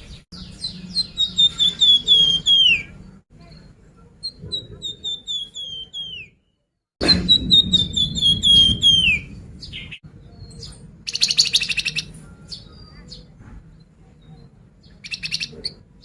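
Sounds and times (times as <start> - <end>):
songbird whistling: 0.0 - 3.0, 4.3 - 6.4, 7.1 - 13.3.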